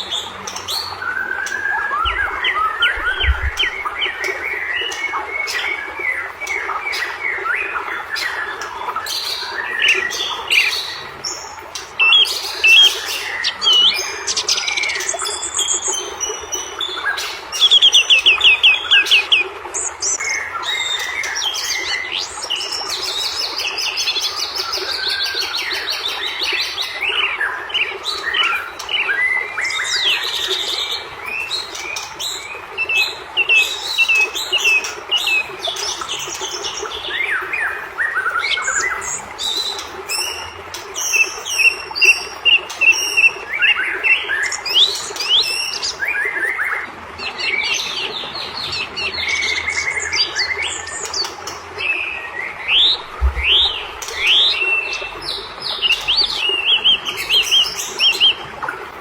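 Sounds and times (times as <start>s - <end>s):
bird singing trills and whistles: 0.0s - 46.8s.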